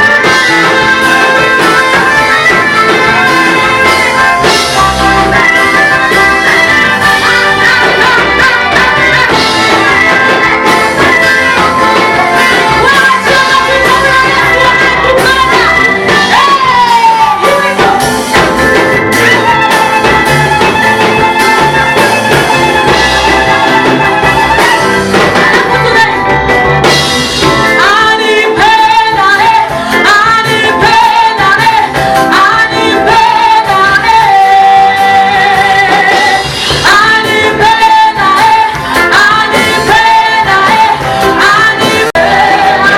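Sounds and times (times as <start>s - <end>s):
instrumental accompaniment: 0.0s - 42.9s
lead voice holding long notes: 0.0s - 42.9s
group singing praise song: 3.9s - 18.4s, 27.8s - 42.9s.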